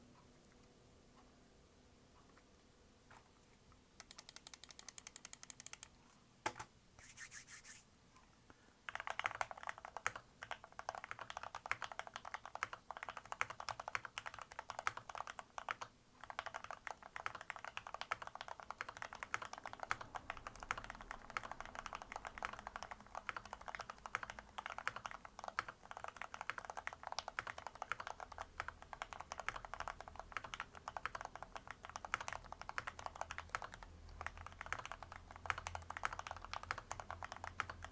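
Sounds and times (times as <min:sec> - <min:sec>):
typing on mechanical keyboard: 0:04.0 - 0:05.9, 0:08.9 - 0:37.9.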